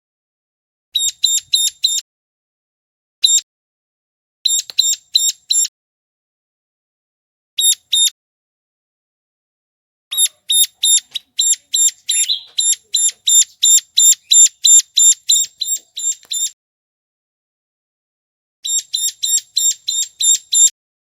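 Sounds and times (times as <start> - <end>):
bird calling sharp high notes: 10.1 - 16.6.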